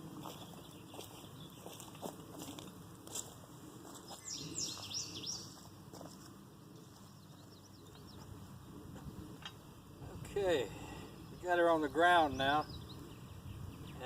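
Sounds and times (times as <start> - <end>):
bird chirping: 0.3 - 2.1, 4.0 - 5.7, 6.8 - 8.8, 10.9 - 14.0.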